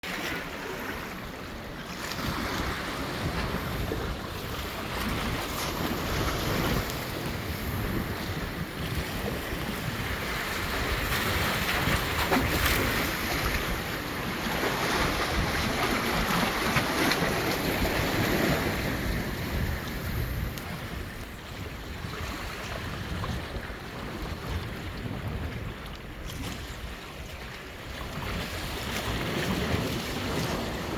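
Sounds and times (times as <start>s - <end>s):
sea surf washing ashore: 0.0s - 23.9s
wind buffeting microphone: 0.2s - 30.9s.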